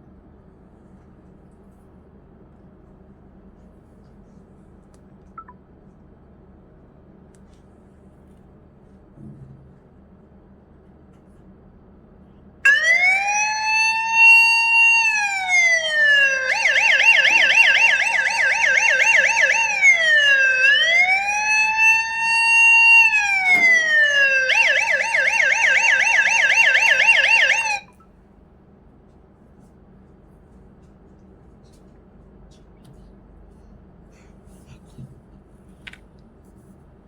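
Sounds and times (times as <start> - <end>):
electronic siren alarm: 12.7 - 28.0.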